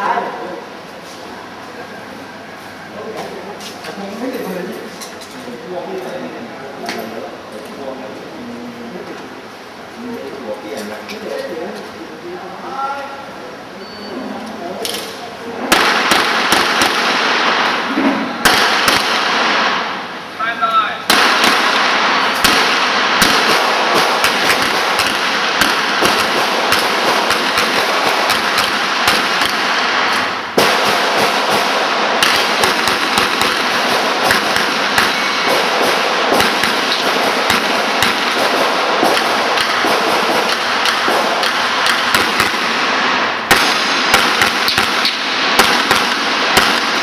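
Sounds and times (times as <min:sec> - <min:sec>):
steady background noise: 0:00.0 - 0:47.0
handgun shots: 0:15.7 - 0:17.7, 0:18.4 - 0:19.9, 0:21.1 - 0:47.0.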